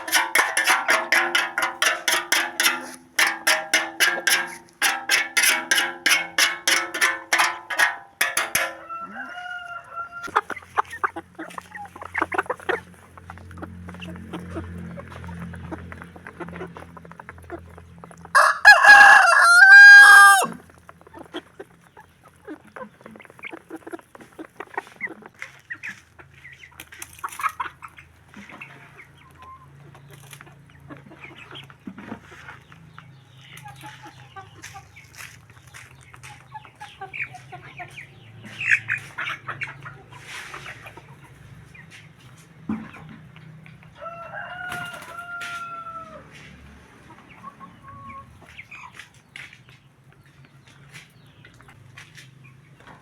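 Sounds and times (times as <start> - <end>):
chicken clucks: 0.0 - 53.0
rooster crowing: 8.6 - 10.3, 18.4 - 20.6, 44.0 - 46.2.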